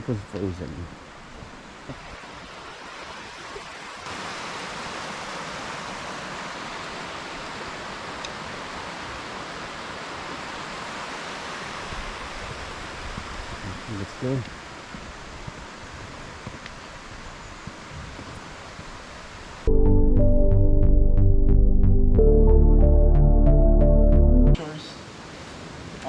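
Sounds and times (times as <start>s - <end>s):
flowing water rushing: 1.2s - 13.6s.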